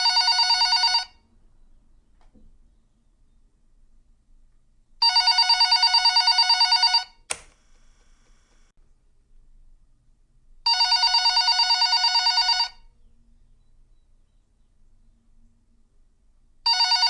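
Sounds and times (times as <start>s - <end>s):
telephone bell ringing: 0.0s - 1.2s, 5.0s - 7.2s, 10.7s - 12.9s, 16.7s - 17.0s
sharp click: 7.3s - 7.6s.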